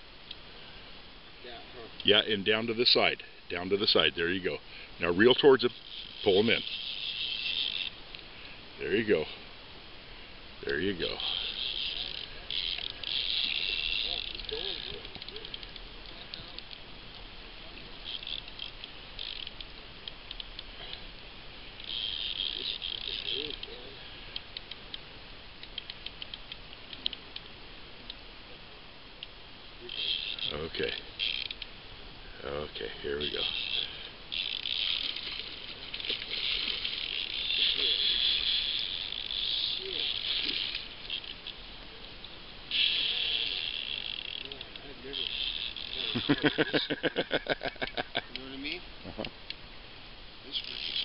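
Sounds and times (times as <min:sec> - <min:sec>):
fishing reel ratchet clicking: 0:05.3 - 0:08.0, 0:11.1 - 0:16.8, 0:18.0 - 0:21.0, 0:21.8 - 0:23.8, 0:29.8 - 0:31.7, 0:33.2 - 0:41.6, 0:42.7 - 0:46.6, 0:50.5 - 0:51.0.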